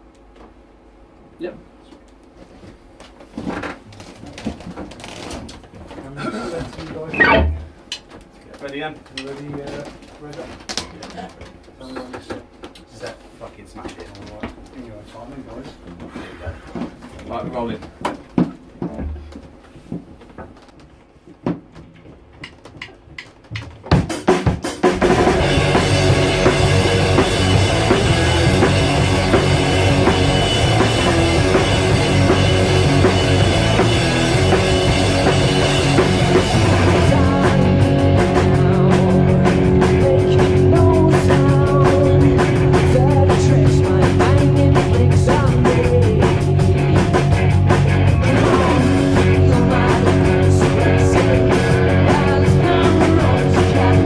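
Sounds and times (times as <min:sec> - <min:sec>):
rock band playing live: 0:07.1 - 0:07.6, 0:24.1 - 0:54.0
cymbals and drum hits: 0:07.2 - 0:07.8.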